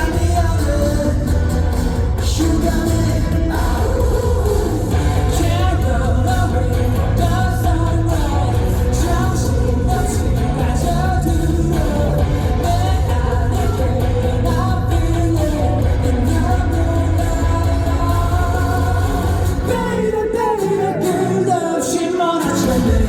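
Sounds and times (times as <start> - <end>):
live pop-rock band: 0.0 - 23.0
man singing lead vocal: 0.0 - 23.0.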